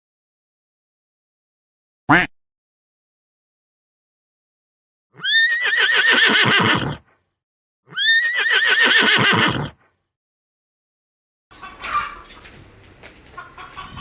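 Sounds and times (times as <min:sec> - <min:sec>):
horse whinnying: 0:05.2 - 0:07.1, 0:07.9 - 0:09.8.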